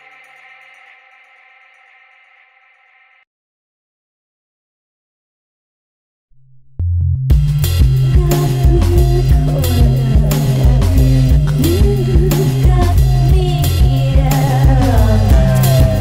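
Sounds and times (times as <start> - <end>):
instrumental song with drums: 7.3 - 16.0
guitar: 7.5 - 16.0.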